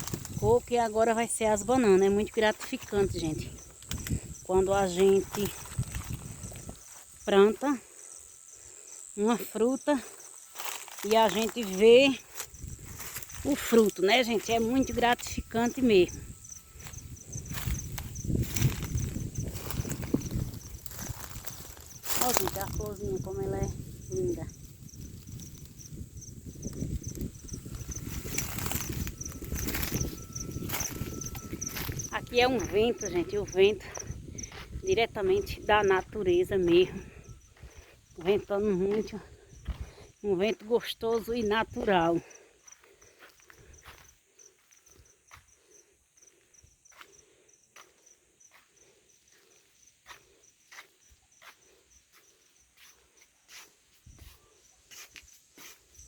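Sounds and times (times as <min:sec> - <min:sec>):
wind blowing across microphone: 0:00.0 - 0:07.2, 0:11.1 - 0:40.2
insect chirping: 0:00.0 - 0:56.0.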